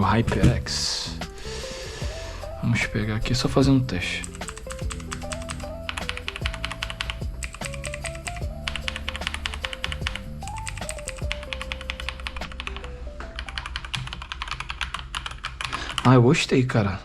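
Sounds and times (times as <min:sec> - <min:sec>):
mechanical keyboard typing: 0:04.3 - 0:16.2.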